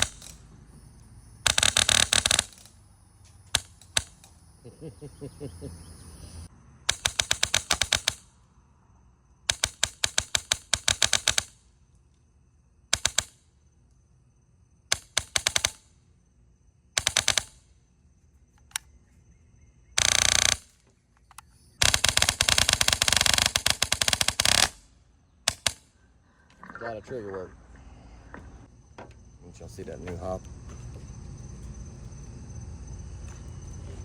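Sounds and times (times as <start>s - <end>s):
airsoft rifle rapid shots: 0.0s - 0.4s, 1.4s - 2.7s, 3.5s - 4.4s, 6.9s - 8.3s, 9.5s - 11.6s, 12.9s - 13.4s, 14.9s - 15.9s, 17.0s - 17.7s, 20.0s - 20.8s, 21.8s - 24.8s, 25.5s - 26.0s.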